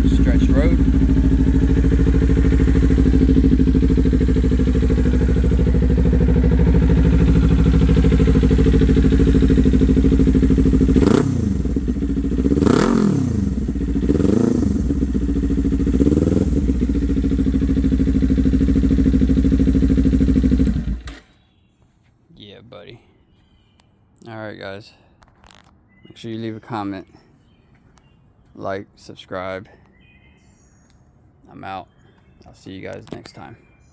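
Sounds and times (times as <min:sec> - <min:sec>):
motorcycle engine idling and revving: 0:00.0 - 0:21.3.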